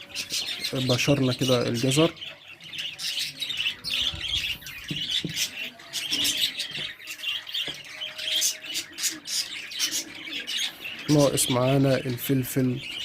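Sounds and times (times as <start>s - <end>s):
cage birds chirping and squawking: 0.0s - 13.0s.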